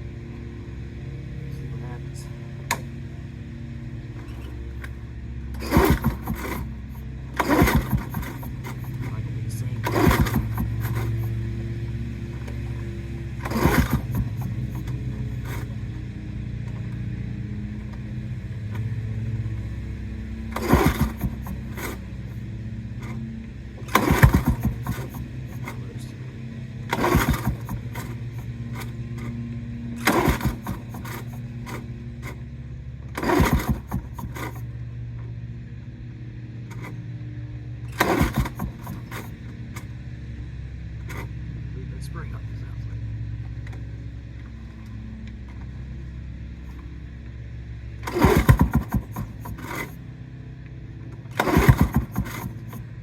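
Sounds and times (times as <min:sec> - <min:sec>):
low hum: 0:00.0 - 0:53.0
lawn mower pull-start cranking: 0:02.6 - 0:03.0, 0:04.0 - 0:11.5, 0:12.3 - 0:17.0, 0:20.4 - 0:34.8, 0:36.7 - 0:37.0, 0:37.8 - 0:40.0, 0:41.0 - 0:41.4, 0:48.0 - 0:50.1, 0:51.1 - 0:53.0.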